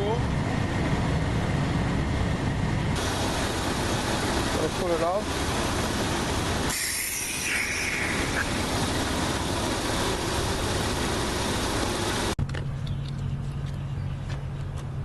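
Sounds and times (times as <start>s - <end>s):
air conditioning blower: 0.0s - 12.4s
car engine idling: 3.0s - 12.4s
brief hiss: 6.7s - 8.4s.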